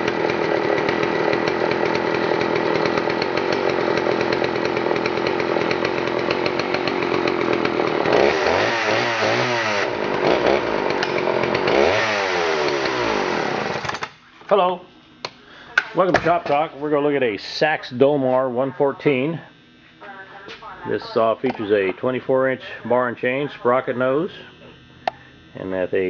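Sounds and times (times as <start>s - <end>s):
chainsaw engine revving: 0.0s - 14.2s.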